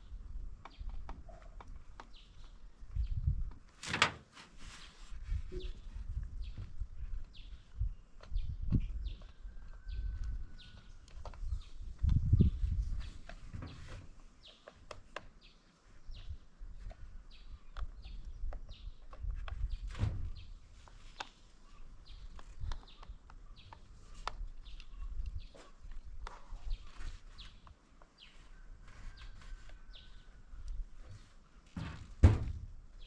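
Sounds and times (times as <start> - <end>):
birds chirping: 5.5 - 31.7.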